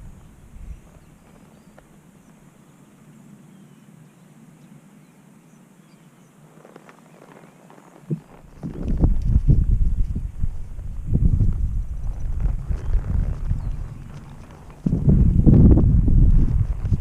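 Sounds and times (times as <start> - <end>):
horse hoof steps: 6.6 - 17.0.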